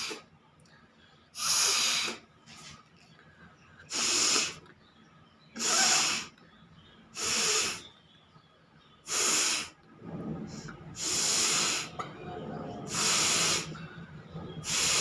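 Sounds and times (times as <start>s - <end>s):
person blowing air through nose: 1.4s - 2.2s, 3.9s - 4.6s, 5.6s - 6.3s, 7.2s - 7.8s, 9.1s - 9.8s, 11.0s - 12.0s, 12.9s - 13.8s, 14.6s - 15.0s.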